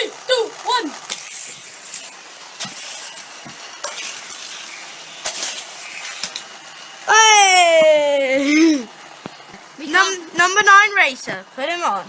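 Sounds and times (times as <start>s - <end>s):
toy car wheels rattling on track: 0.6s - 6.6s.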